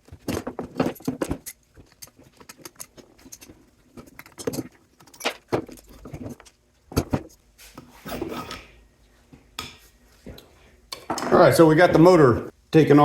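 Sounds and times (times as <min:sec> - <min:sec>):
metal parts knocking and clinking: 0:00.0 - 0:07.1, 0:08.1 - 0:08.7
metal scraping and rubbing: 0:07.6 - 0:08.8.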